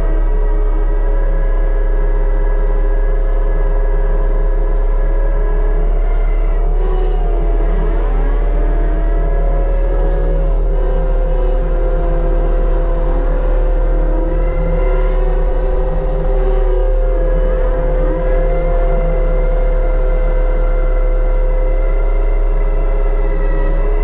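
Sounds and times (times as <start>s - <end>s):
excavator engine hum: 0.0s - 24.0s
brush cutter whine: 4.6s - 24.0s.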